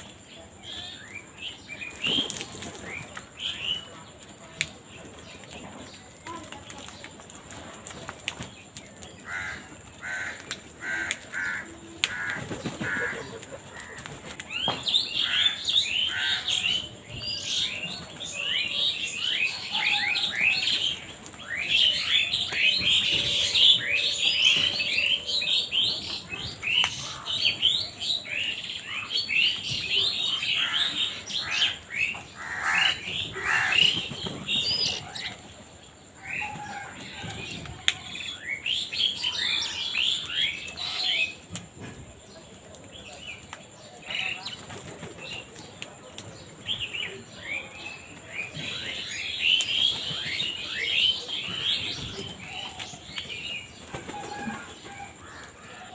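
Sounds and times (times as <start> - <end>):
chorus of birds chirping: 0.0 - 55.9
crows calling: 9.2 - 14.2, 15.1 - 16.9, 30.2 - 34.0, 54.0 - 55.9.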